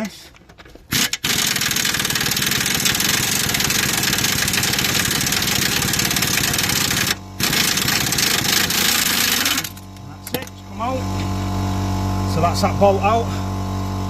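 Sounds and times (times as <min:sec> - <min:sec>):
impact wrench hammering: 0:01.0 - 0:10.6.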